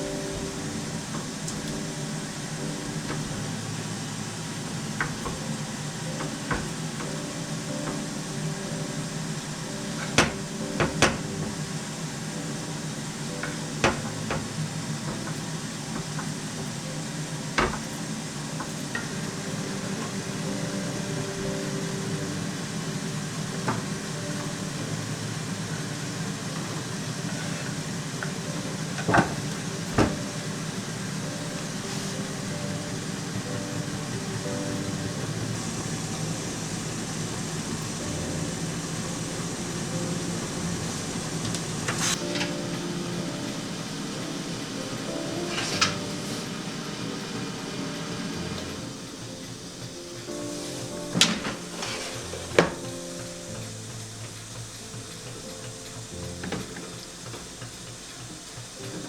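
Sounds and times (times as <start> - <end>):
steady machine hum: 0.0 - 59.0
kitchen utensils and dishes clicking: 45.5 - 46.4, 50.6 - 52.9.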